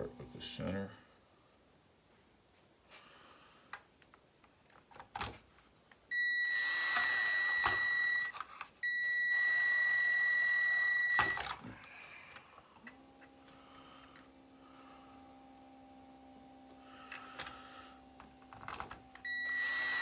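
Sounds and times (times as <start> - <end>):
electric screwdriver whine: 6.2 - 11.7, 17.0 - 20.0.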